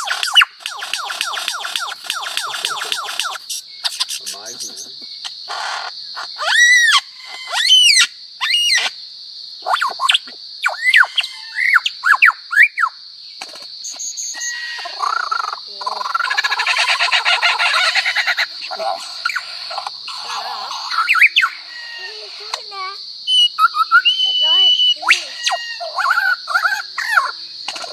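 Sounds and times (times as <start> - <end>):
bird whistled calls: 0.0 - 4.9, 9.6 - 12.9, 13.9 - 15.5, 19.2 - 22.4, 23.3 - 27.3
high insect-like buzz: 0.0 - 27.9.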